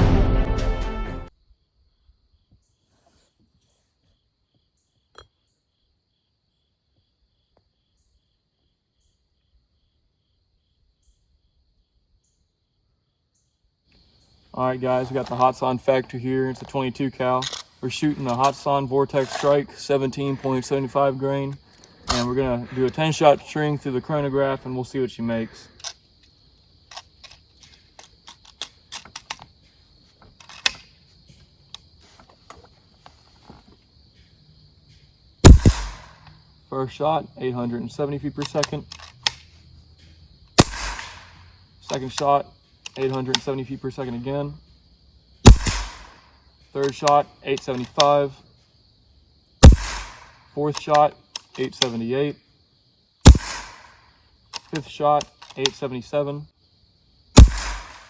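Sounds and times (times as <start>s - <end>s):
insect chirping: 1.3s - 58.0s
air rifle clicks: 17.4s - 19.6s, 26.9s - 29.5s, 30.4s - 30.9s, 35.4s - 36.3s, 38.4s - 39.5s, 40.6s - 43.5s, 45.4s - 46.2s, 46.8s - 48.2s, 49.6s - 52.0s, 53.2s - 55.8s, 57.4s - 58.0s
loud mechanical snap: 35.5s - 36.2s, 40.6s - 41.4s, 45.5s - 46.2s, 49.6s - 50.4s, 53.3s - 54.0s, 57.4s - 58.0s.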